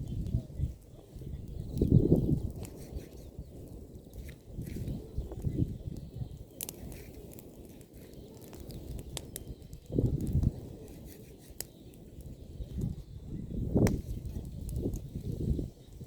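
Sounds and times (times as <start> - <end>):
bonfire crackling and popping: 0.0 - 16.0
low rushing of flames: 0.0 - 16.0.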